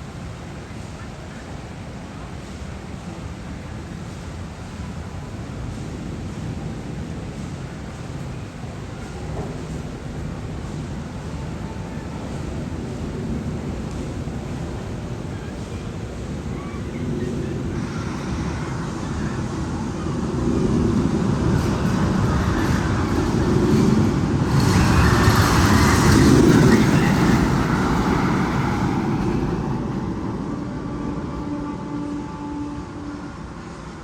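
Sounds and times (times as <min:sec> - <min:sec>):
heavy rumble: 0:12.4 - 0:33.1.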